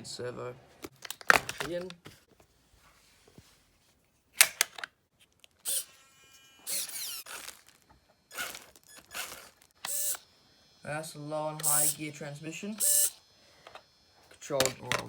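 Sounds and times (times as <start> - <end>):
small servos whirring: 5.3 - 15.0.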